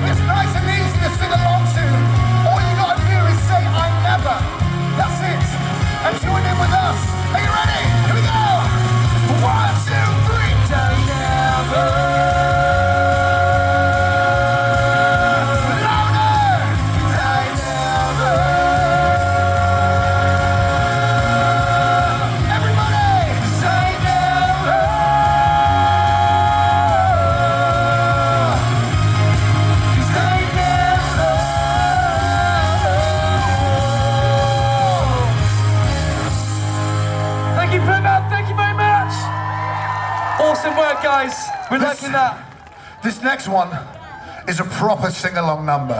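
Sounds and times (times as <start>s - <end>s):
live rock band playing: 0.0s - 40.3s
singer holding long notes: 4.8s - 38.3s.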